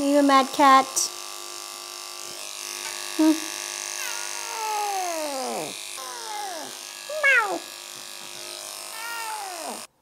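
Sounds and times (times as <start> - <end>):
electric clippers whining: 0.0 - 10.0
old cat meowing: 4.0 - 7.7, 8.9 - 9.9.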